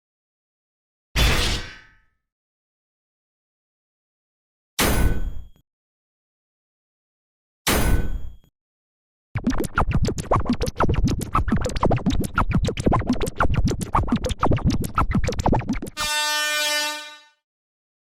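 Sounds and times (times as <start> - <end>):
steady horn-like tone: 16.0 - 17.4.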